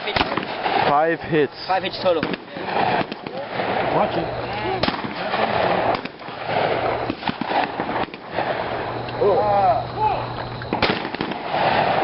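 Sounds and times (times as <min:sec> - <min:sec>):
shotgun shots: 0:00.0 - 0:01.1, 0:02.0 - 0:08.9, 0:10.7 - 0:12.0
steady outdoor noise: 0:00.0 - 0:12.0
voices: 0:00.0 - 0:12.0.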